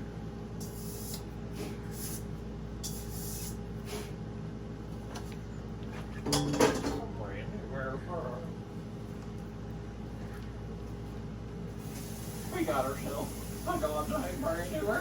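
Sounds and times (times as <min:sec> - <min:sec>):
aerosol spray hissing: 0:11.8 - 0:15.0.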